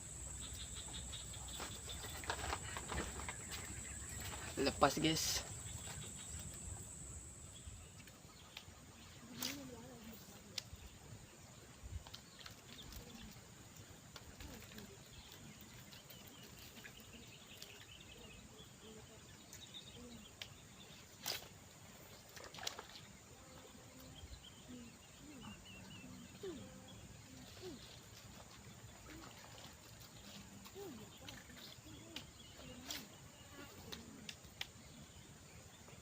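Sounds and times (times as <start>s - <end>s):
insect drone: 0.0s - 8.0s.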